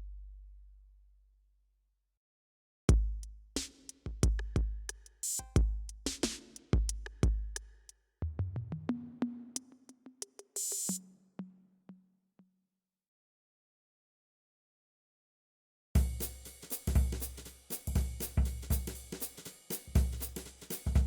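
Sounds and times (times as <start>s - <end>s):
drum machine percussion: 2.9s - 12.0s, 16.0s - 21.0s.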